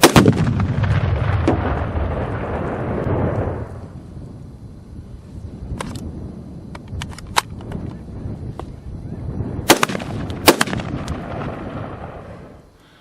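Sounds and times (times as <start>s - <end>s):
rifle shots: 0.0s - 2.0s, 9.6s - 12.4s
steady low rumble: 0.0s - 12.8s
sharp clicks and snaps: 5.7s - 6.1s, 6.7s - 8.0s.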